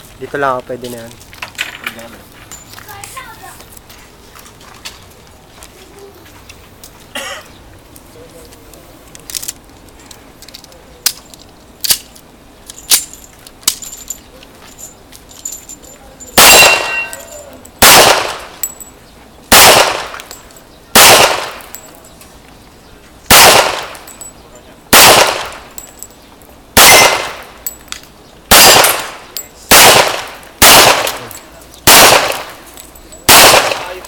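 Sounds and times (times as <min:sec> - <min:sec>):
gunshots with echo: 0:16.4 - 0:17.1, 0:17.8 - 0:18.5, 0:19.5 - 0:20.2, 0:20.9 - 0:21.7, 0:23.3 - 0:24.1, 0:24.9 - 0:25.7, 0:26.8 - 0:27.5, 0:28.5 - 0:32.6, 0:33.3 - 0:34.0.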